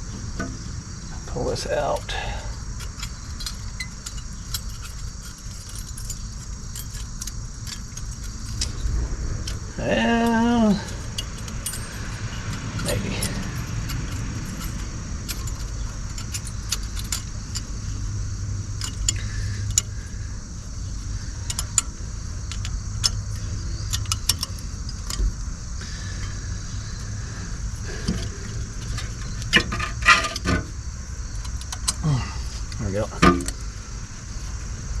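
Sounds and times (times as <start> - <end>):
steady low hum: 0.0 - 35.0
metallic clicks of brake clips: 10.2 - 17.8, 18.7 - 20.0, 21.4 - 25.3, 31.3 - 32.0.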